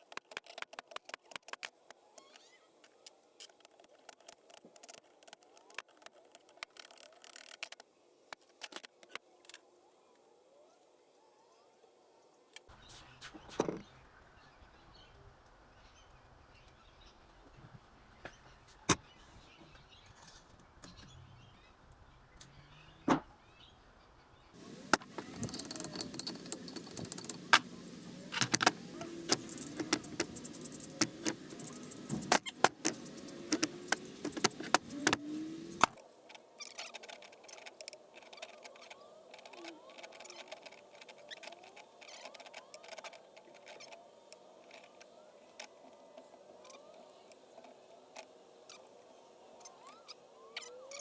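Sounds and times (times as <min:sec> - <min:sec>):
metal parts clicking and clinking: 0:24.6 - 0:36.0.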